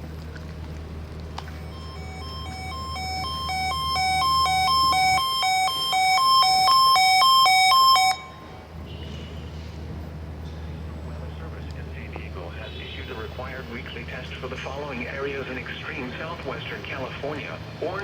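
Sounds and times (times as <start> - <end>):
steady low hum: 0.0 - 8.7
electronic two-tone alert signal: 1.7 - 8.4.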